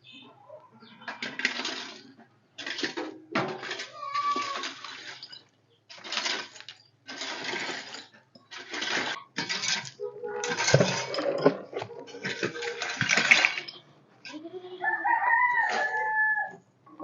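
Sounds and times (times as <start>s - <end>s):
scraping and sweeping on floor: 2.6s - 13.5s.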